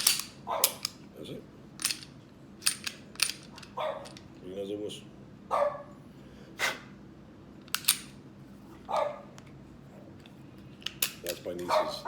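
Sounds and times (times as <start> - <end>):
dog barking: 0.5 - 0.8, 3.8 - 4.1, 5.5 - 5.9, 8.9 - 9.3, 11.7 - 12.0.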